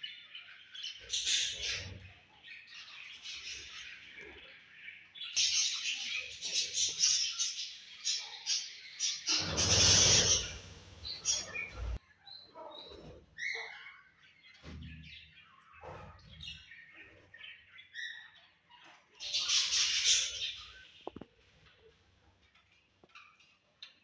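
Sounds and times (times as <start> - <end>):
budgies chirping: 0.0 - 14.5, 15.2 - 21.2
loud wing rustling flurry: 9.3 - 12.0.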